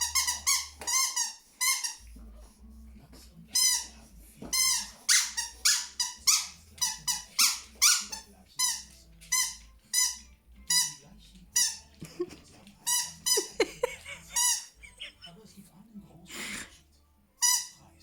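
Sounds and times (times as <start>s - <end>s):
rubber toy squeaking: 0.0s - 2.0s, 3.6s - 3.9s, 4.5s - 12.0s, 12.8s - 15.0s, 17.4s - 17.8s.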